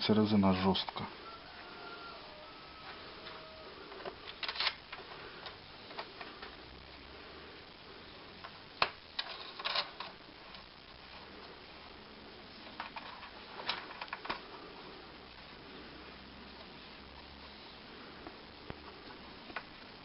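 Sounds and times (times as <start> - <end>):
light clicks and knocks of parts: 3.2 - 6.6, 12.6 - 14.5.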